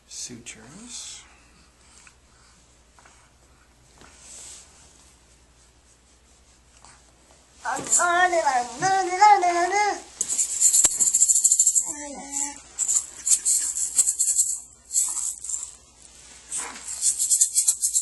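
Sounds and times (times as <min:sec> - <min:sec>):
high voice singing: 0:07.7 - 0:10.4
toy rattle shaking: 0:10.2 - 0:15.8, 0:16.5 - 0:18.0.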